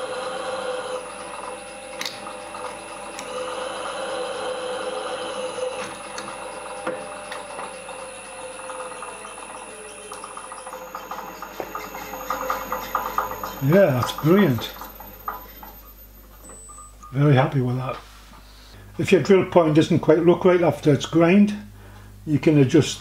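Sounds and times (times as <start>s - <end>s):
small electric motor running: 0.0s - 16.3s.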